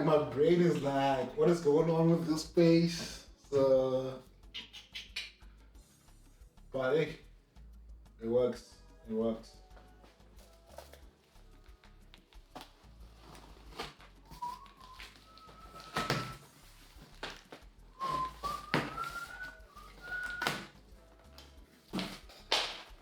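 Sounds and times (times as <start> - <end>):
person whistling: 3.0 - 5.5, 14.2 - 21.6.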